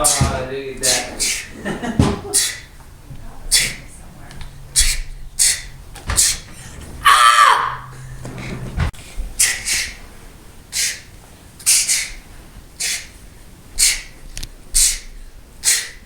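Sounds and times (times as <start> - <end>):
boy's hissing exhales: 0.0 - 1.6, 2.3 - 2.8, 3.5 - 3.9, 4.7 - 6.5, 9.4 - 10.1, 10.7 - 16.0.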